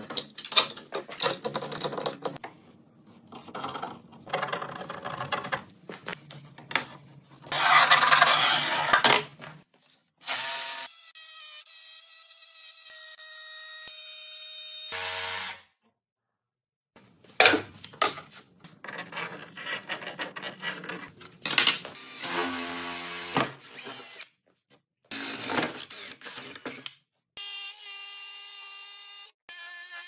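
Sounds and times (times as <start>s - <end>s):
power drill motor whining: 22.0s - 24.3s.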